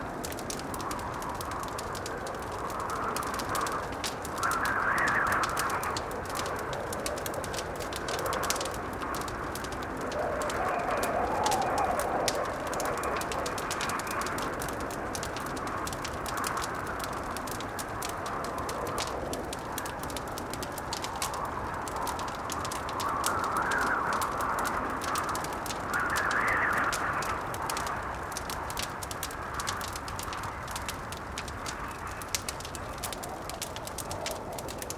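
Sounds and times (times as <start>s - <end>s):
howling blizzard wind: 0.0s - 34.9s
wood fire crackling: 0.0s - 34.9s.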